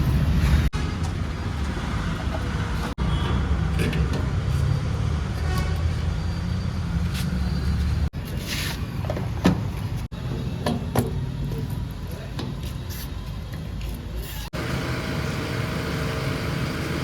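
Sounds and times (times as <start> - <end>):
diesel machinery rumbling: 14.5 - 17.0.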